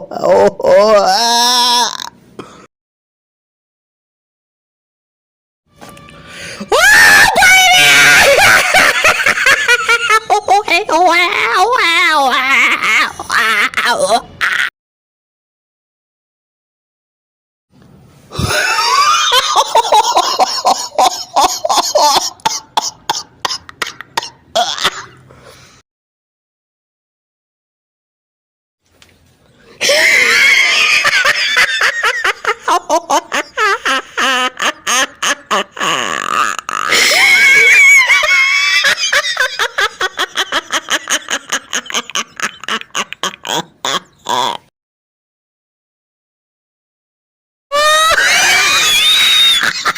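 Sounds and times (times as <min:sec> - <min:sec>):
high laugh in rhythmic bursts: 0:08.2 - 0:10.7, 0:18.4 - 0:25.2, 0:29.9 - 0:44.6.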